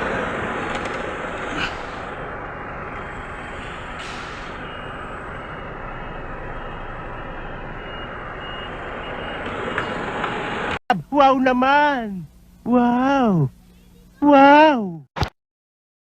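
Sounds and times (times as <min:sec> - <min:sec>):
diesel truck engine running: 0:00.0 - 0:12.6
short hiss: 0:04.0 - 0:04.6.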